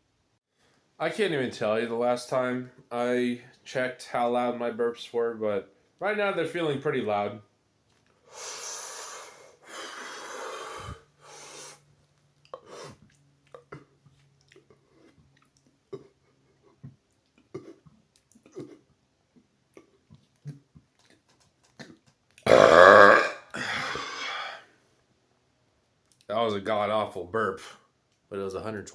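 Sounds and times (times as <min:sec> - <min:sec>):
man breathing deeply: 0:08.2 - 0:11.8, 0:23.5 - 0:24.7
mouth clicks and smacks: 0:12.2 - 0:22.5.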